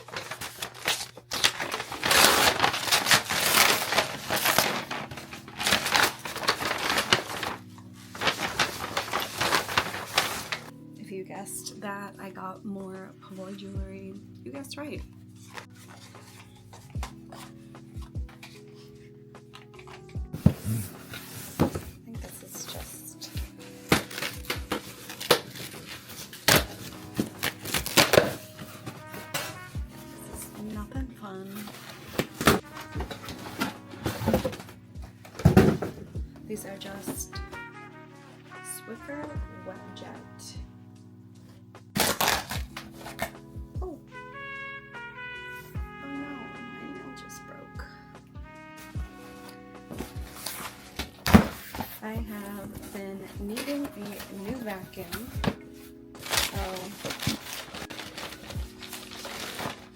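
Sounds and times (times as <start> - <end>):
packaging rustling and crinkling: 0.0 - 10.7, 15.4 - 38.6, 41.9 - 43.5, 48.8 - 59.9.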